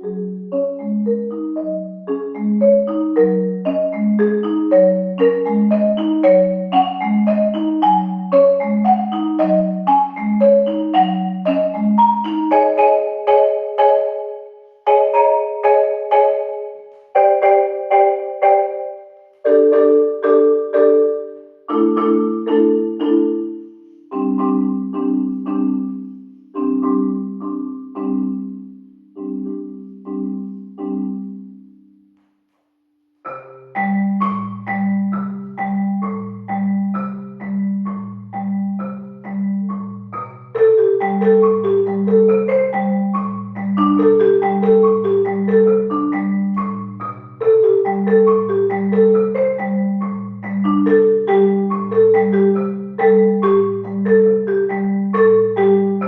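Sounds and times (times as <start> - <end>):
marimba music: 0.0 - 32.2, 33.2 - 56.0.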